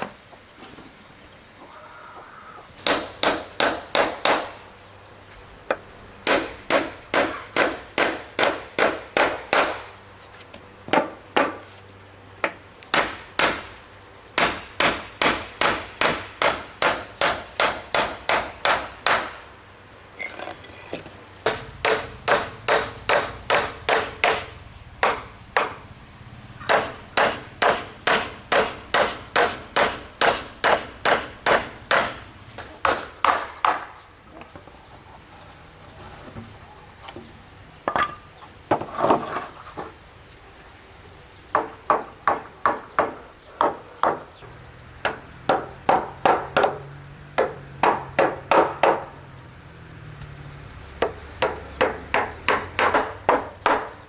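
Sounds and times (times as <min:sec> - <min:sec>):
hammer striking wood: 0:02.8 - 0:04.6, 0:06.2 - 0:09.9, 0:10.9 - 0:11.6, 0:12.4 - 0:13.8, 0:14.4 - 0:19.4, 0:21.4 - 0:25.8, 0:26.6 - 0:33.9, 0:41.6 - 0:44.3, 0:45.0 - 0:46.8, 0:47.4 - 0:49.1, 0:51.0 - 0:54.0.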